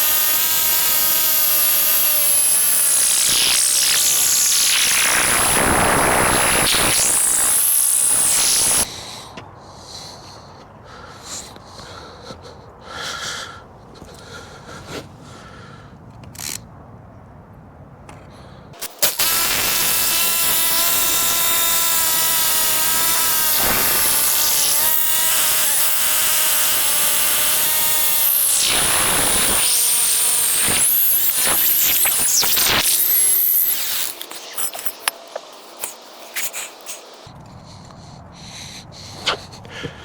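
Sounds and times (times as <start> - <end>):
power drill boring into concrete: 0.0 - 8.9, 18.8 - 37.3.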